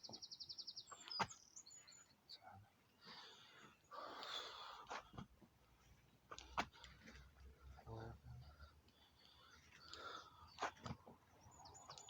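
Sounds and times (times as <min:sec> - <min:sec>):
small birds chirping: 0:00.0 - 0:04.5, 0:07.8 - 0:12.0.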